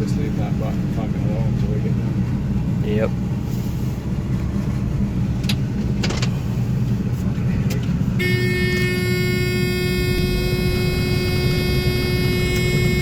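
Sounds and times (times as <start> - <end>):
combine engine rumble: 0.0 - 13.0
high multi-pitched whine: 8.2 - 13.0.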